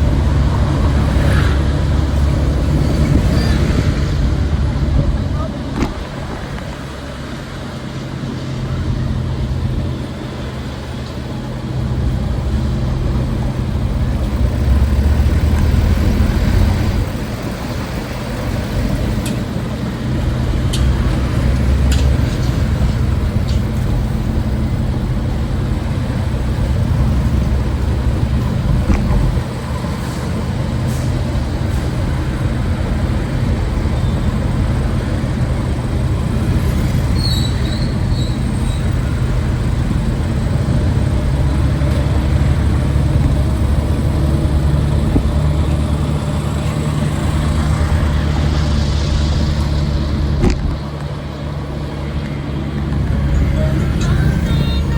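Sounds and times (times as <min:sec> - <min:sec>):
vehicle engines running: 0:00.0 - 0:54.9
short high squeak: 0:02.8 - 0:04.1, 0:37.1 - 0:38.9.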